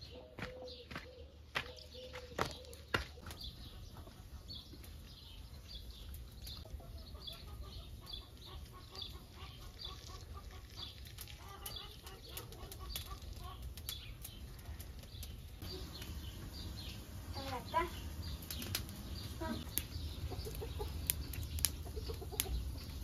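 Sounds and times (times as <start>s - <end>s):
birds chirping: 0.0s - 23.0s
steady low rumble: 15.6s - 23.0s.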